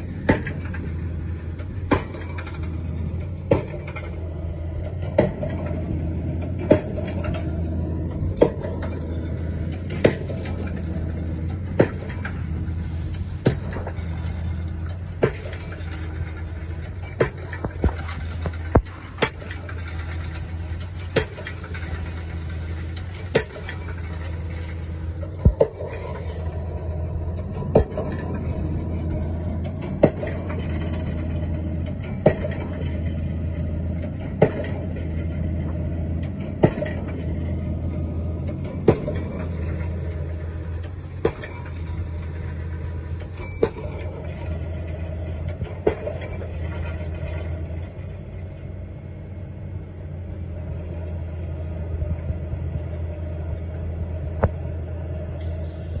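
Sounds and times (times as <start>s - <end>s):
pile driver hammer striking: 0.0s - 15.8s, 25.2s - 44.4s
engine drone: 0.0s - 56.0s.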